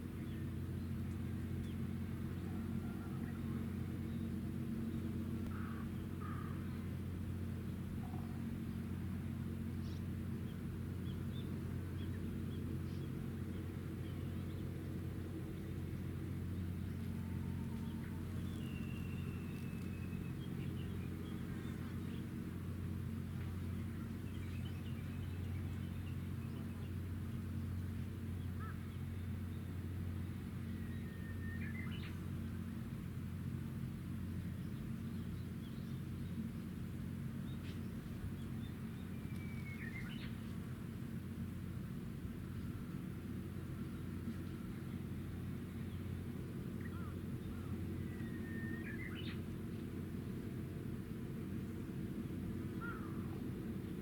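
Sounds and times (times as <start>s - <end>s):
ship engines droning: 0.0s - 54.0s
ship engines humming: 8.8s - 31.5s.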